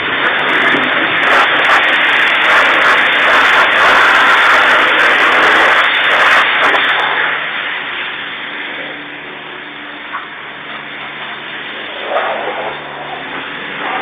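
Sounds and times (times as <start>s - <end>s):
pressure washer spray hissing: 0.0s - 8.6s.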